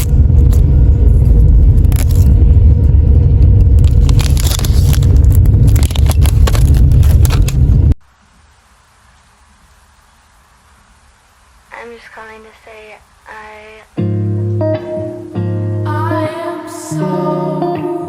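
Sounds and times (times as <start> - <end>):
train rumbling: 0.0 - 8.0.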